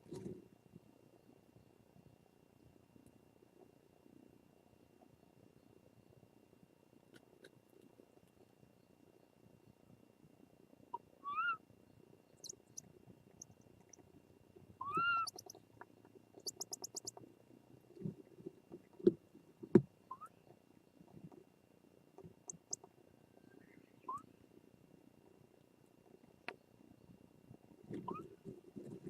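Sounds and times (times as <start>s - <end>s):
owl mew calls: 10.9s - 11.6s, 14.8s - 15.6s, 20.1s - 20.4s, 24.0s - 24.3s.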